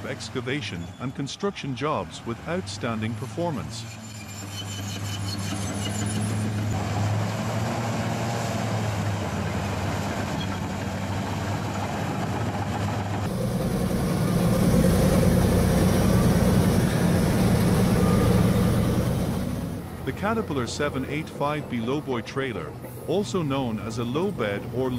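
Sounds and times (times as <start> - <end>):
large diesel engine under load: 6.2 - 24.9.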